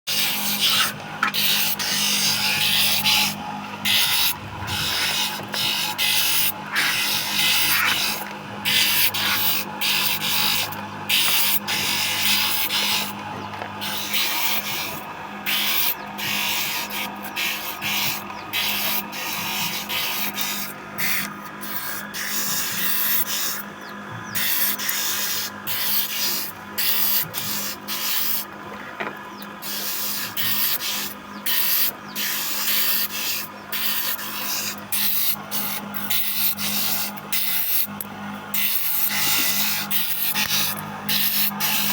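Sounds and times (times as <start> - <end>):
rasping strokes on bamboo: 0.1 - 28.5, 29.6 - 41.9
steady low hum: 0.1 - 41.9.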